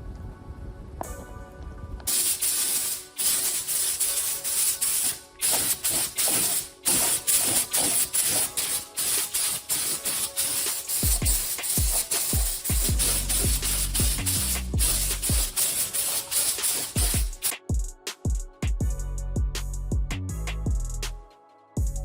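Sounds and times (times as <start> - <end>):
background music with steady beat: 0.0 - 22.0
paint spray gun hissing: 2.1 - 17.6.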